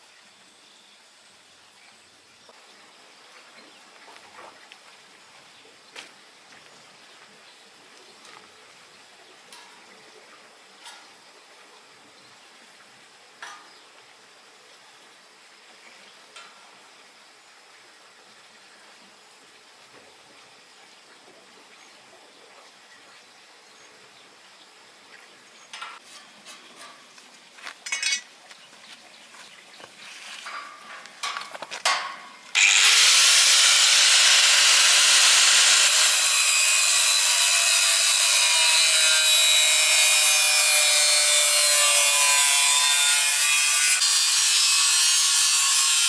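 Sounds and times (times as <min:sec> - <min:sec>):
faint steady hiss: 0:00.0 - 0:32.6
sharp clinks and knocks: 0:27.8 - 0:28.3.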